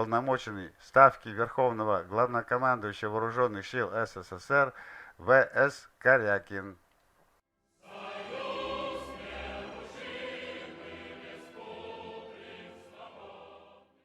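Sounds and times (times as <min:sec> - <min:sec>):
choir singing sustained chords: 0:07.6 - 0:14.0.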